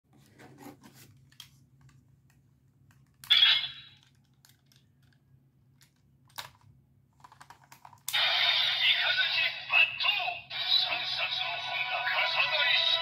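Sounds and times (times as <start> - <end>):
small plastic clicks: 4.0 - 5.2, 5.8 - 8.1.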